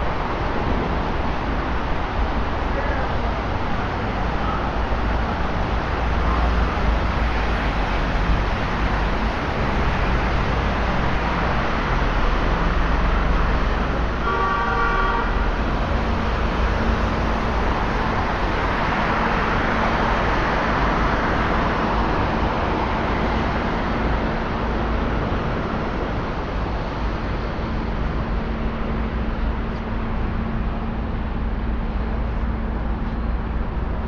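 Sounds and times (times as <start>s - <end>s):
vehicle horn toot: 14.2s - 15.4s.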